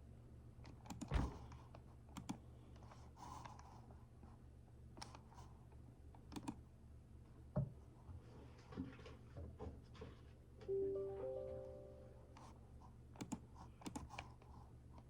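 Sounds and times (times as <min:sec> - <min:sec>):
thump: 0:01.1 - 0:01.5
electronic chime: 0:10.7 - 0:12.4.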